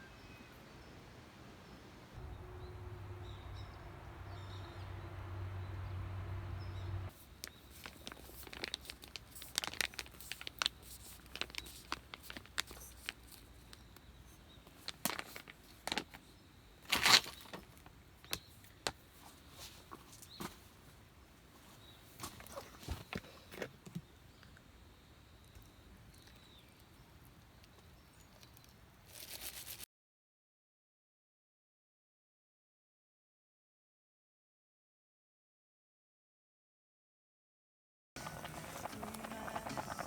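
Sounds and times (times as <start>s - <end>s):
low steady hum: 0.0s - 8.4s
crinkling and rustling: 7.0s - 24.1s, 27.6s - 29.8s, 38.2s - 40.0s.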